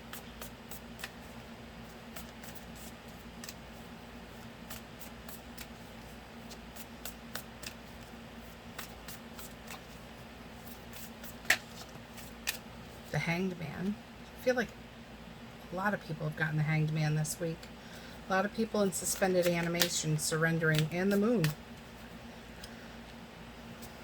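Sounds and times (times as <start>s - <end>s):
steady low hum: 0.0s - 24.0s
cards clicking and snapping: 11.4s - 12.6s, 19.4s - 20.0s.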